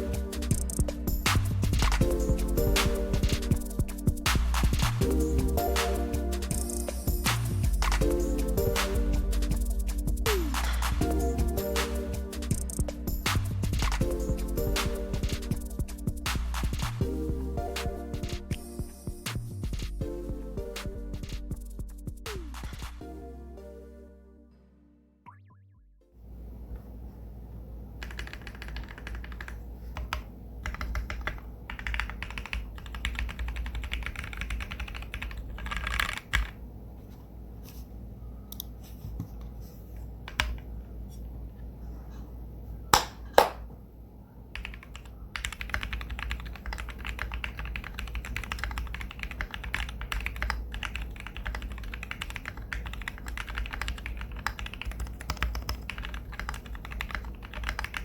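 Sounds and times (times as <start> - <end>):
mechanical keyboard typing: 28.0 - 36.6, 44.6 - 58.0.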